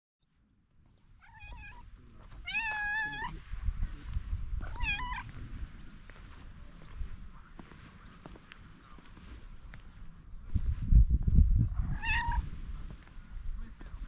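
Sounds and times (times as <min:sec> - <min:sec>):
cat meowing: 0:01.2 - 0:03.4, 0:04.6 - 0:05.4, 0:11.8 - 0:12.6.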